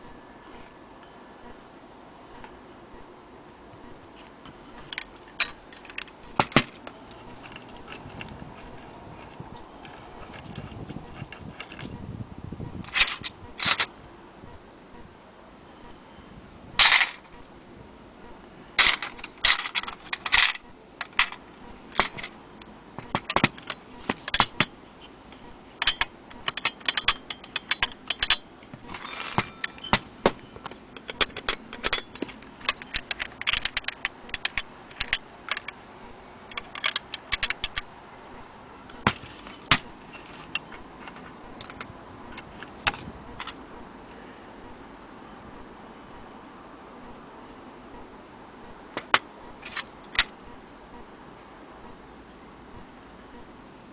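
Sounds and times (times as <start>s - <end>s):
clock parts clicking and knocking: 4.2s - 12.0s, 12.8s - 13.9s, 16.8s - 17.5s, 18.8s - 22.4s, 23.0s - 35.8s, 36.5s - 37.9s, 38.9s - 43.6s, 48.9s - 50.4s.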